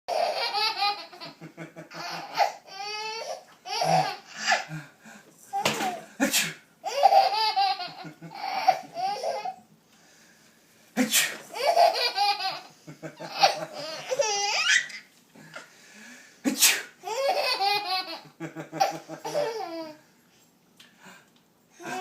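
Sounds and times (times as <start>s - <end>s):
baby laughing hysterically: 0.1s - 4.7s, 6.8s - 9.6s, 11.5s - 15.0s, 17.0s - 20.0s
man fake sneezing: 6.2s - 6.7s, 11.0s - 11.5s, 16.4s - 17.0s.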